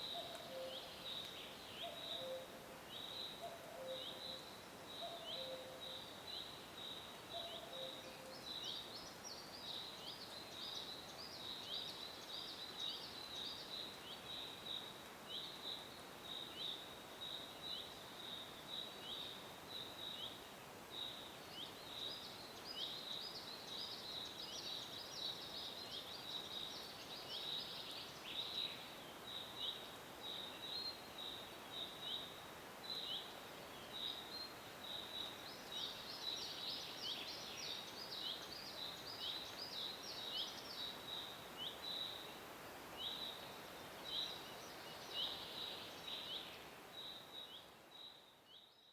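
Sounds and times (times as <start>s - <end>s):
faint steady hiss: 0.0s - 48.9s
small birds chirping: 0.0s - 48.9s
cuckoo calling: 0.1s - 0.9s.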